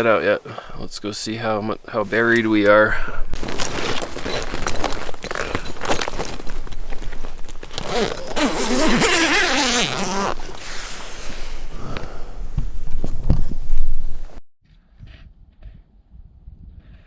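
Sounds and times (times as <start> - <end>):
fabric rustling: 1.5 - 14.4
tent zipper opening: 3.3 - 14.4.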